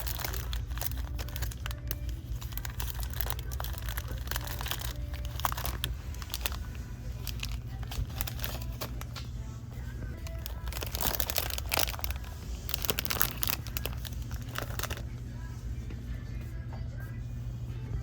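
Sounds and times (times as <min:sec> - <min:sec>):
snack packaging crinkling: 0:00.0 - 0:09.3, 0:10.1 - 0:15.1
ventilation and refrigeration hum: 0:00.0 - 0:18.0.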